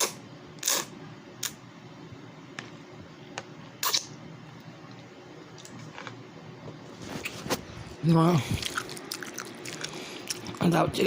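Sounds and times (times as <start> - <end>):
person eating and slurping: 0.0 - 0.9.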